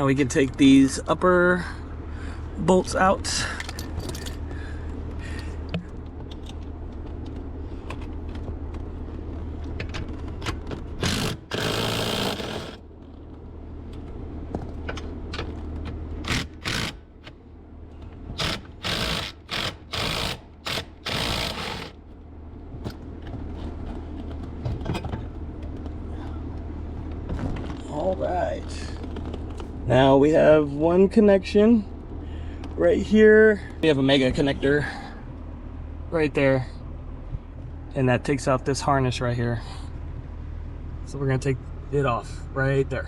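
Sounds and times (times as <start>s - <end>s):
low hum: 0.4s - 42.6s
power tool running in bursts: 11.0s - 12.8s, 16.3s - 17.1s, 18.4s - 22.0s.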